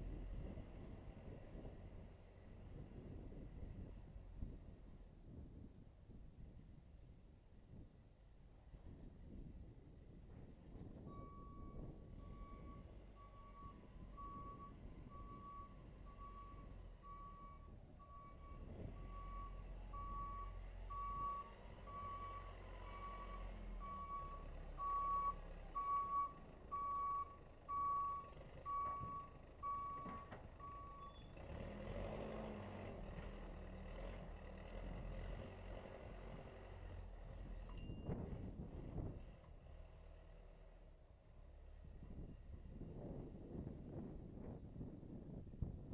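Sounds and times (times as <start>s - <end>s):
backhoe engine running: 10.3s - 43.7s.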